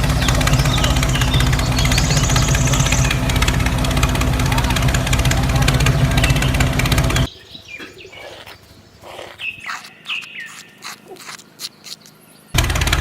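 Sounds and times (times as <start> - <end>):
high bird chirps: 0.0 - 4.2, 4.8 - 12.6
motor-like hum: 0.0 - 7.8, 12.0 - 13.0.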